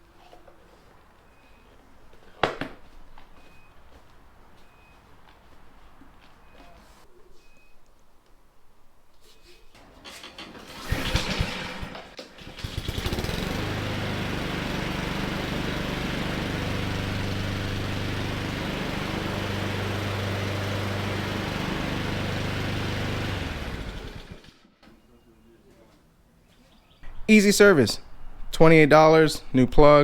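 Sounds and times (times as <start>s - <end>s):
lawn mower pull-start: 9.7s - 25.0s
lawn mower engine running: 9.8s - 24.7s.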